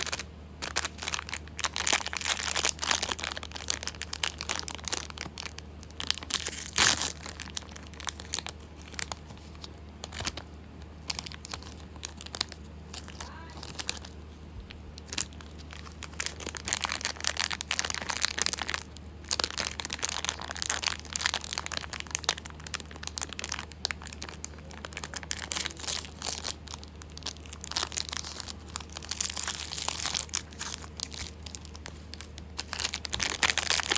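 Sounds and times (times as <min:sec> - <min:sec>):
plastic wrappers crinkling and tearing: 0:00.0 - 0:33.9.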